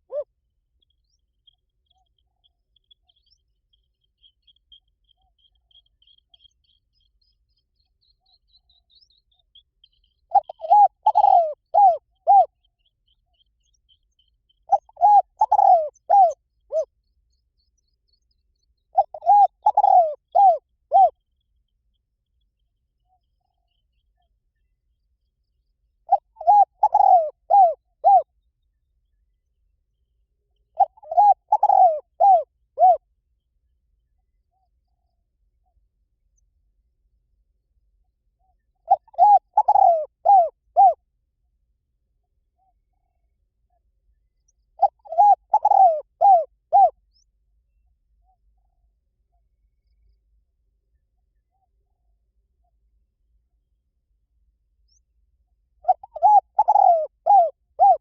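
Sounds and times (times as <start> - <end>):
dove cooing: 0.0 - 0.3, 10.3 - 12.6, 14.7 - 16.9, 18.9 - 21.2, 26.1 - 28.3, 30.8 - 33.0, 38.9 - 41.0, 44.8 - 47.0, 55.8 - 58.0
faint high bird chirps: 0.0 - 58.0.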